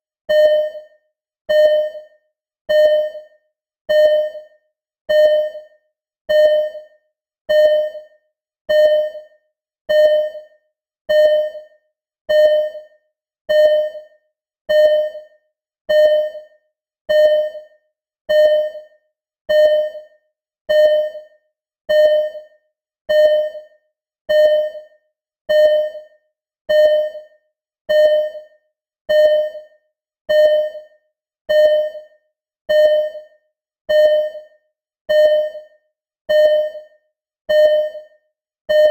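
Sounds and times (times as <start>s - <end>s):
heart monitor beeps: 0.3s - 38.9s.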